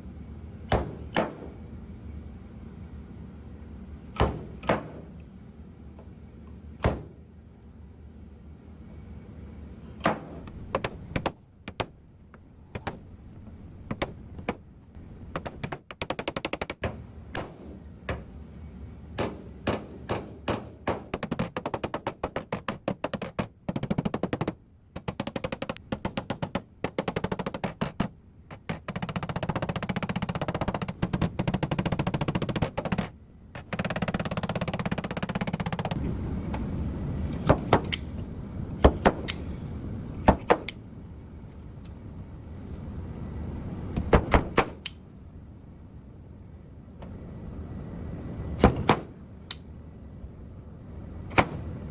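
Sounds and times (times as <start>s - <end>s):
hammer tapping on car door: 4.2s - 5.1s, 19.2s - 35.9s.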